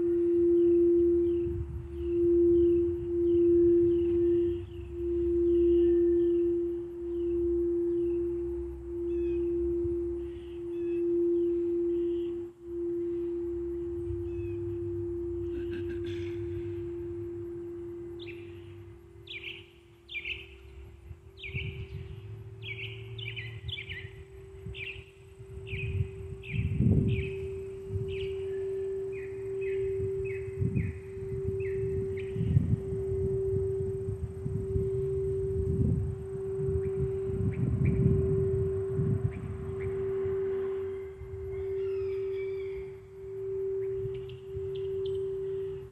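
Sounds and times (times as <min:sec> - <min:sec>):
birds chirping: 0:00.0 - 0:45.9
low rumble: 0:00.0 - 0:45.9
singing bowl tone: 0:00.0 - 0:45.9
bird calling short falling notes: 0:09.1 - 0:20.8.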